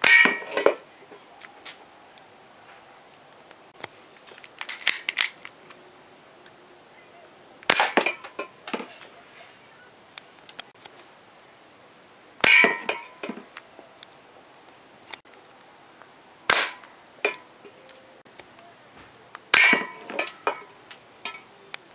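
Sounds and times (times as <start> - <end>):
airsoft pistol shot snapping: 7.7 - 8.1, 16.5 - 16.9.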